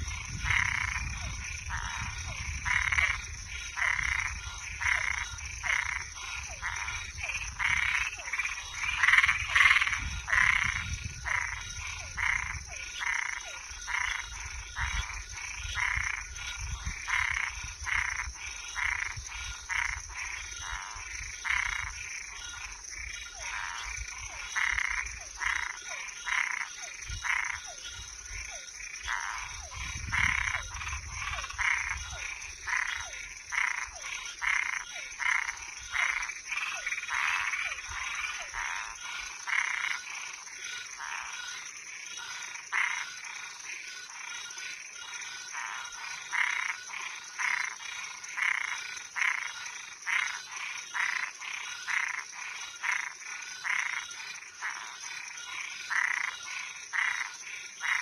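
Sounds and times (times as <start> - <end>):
frogs calling: 0.0 - 58.0
high-pitched insect drone: 0.0 - 58.0.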